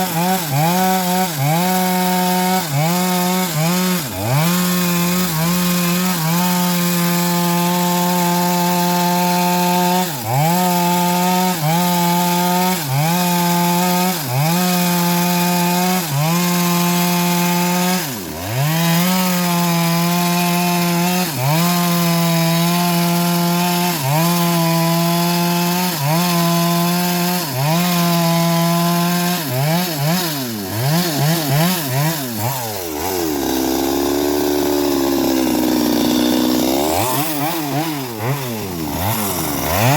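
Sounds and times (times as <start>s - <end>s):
engine-driven bandsaw cutting wood: 0.0s - 39.9s.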